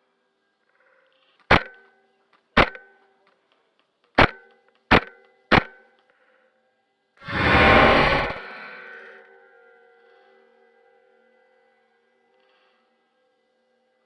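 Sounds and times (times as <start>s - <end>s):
loud ringing boom: 7.2s - 9.3s.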